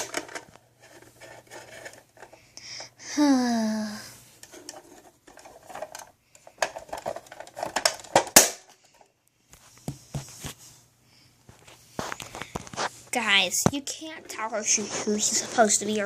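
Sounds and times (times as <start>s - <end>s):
plastic toys clicking and tapping: 0.0s - 2.9s, 4.4s - 9.1s.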